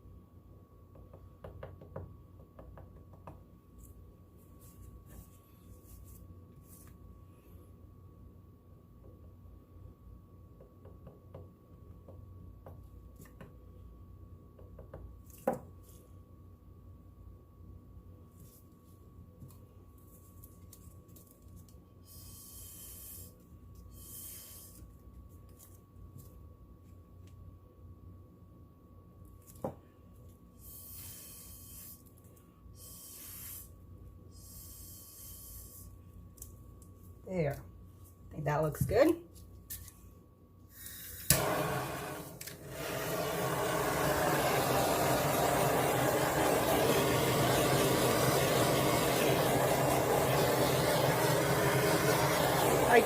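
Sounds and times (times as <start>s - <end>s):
hissing puffs of air: 40.7s - 53.0s.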